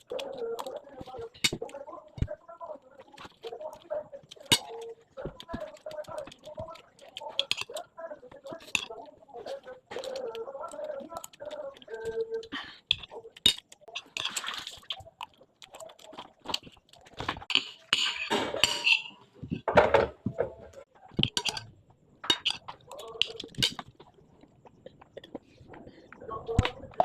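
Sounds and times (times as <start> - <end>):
person eating: 0.0 - 18.3, 22.3 - 27.0
cutlery clinking on plate: 8.6 - 9.0, 17.5 - 20.1, 21.2 - 23.9.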